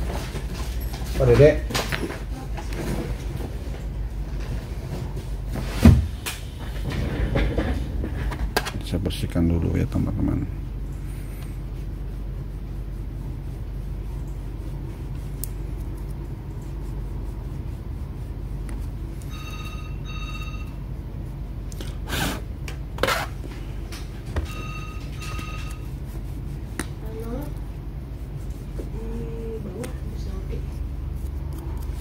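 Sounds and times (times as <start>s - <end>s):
steady low hum: 0.0s - 32.0s
telephone ringing: 19.2s - 20.9s, 24.4s - 25.9s.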